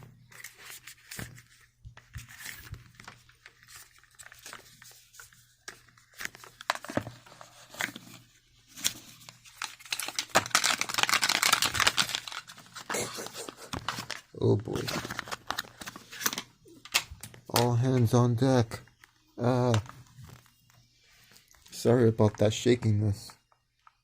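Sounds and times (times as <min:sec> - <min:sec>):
packaging wrap crinkling and tearing: 0:08.7 - 0:17.6.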